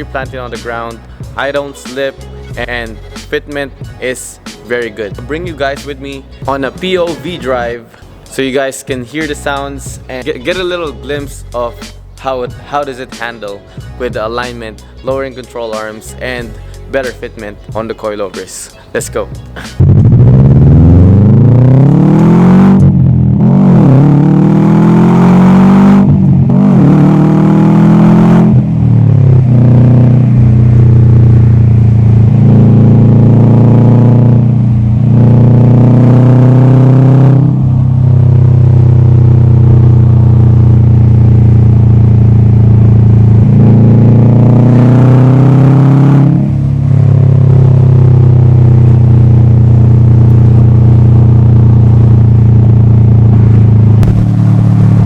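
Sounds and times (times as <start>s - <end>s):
car engine pulling through gears: 19.6s - 55.0s.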